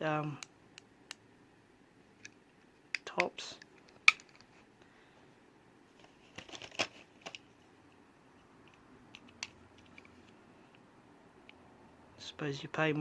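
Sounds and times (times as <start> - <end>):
toy cars and packaging clicking: 6.3 - 7.5.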